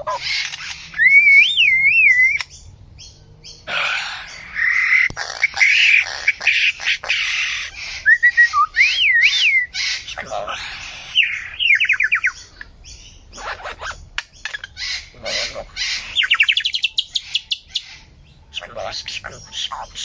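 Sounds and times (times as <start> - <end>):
bird squawks: 0.0 - 2.6, 3.6 - 20.0
bird whistle: 0.9 - 2.5, 7.9 - 10.0, 11.2 - 12.5.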